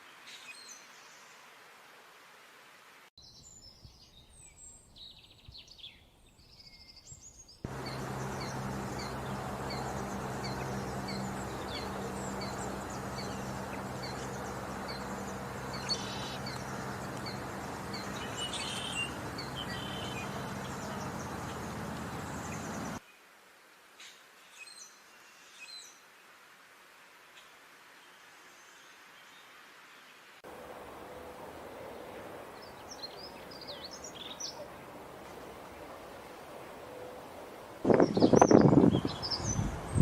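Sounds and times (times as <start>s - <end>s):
wild birds chirping: 3.2s - 23.0s, 30.0s - 40.0s
rushing noise with low hum: 7.7s - 23.0s, 34.7s - 40.0s
bird short high call: 18.2s - 20.4s.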